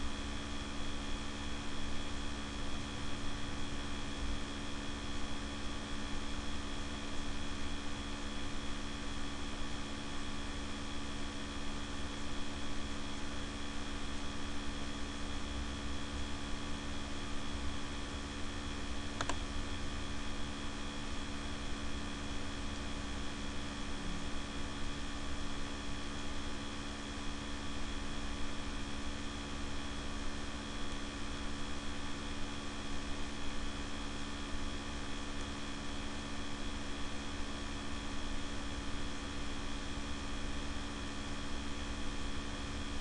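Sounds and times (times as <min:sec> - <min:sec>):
cooling fans humming: 0:17.5 - 0:29.8
faint click: 0:19.2 - 0:19.4.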